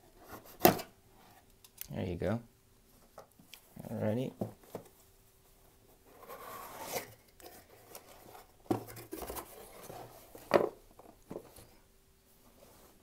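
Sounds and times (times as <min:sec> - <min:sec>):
cardboard box rustling: 0:06.1 - 0:11.8.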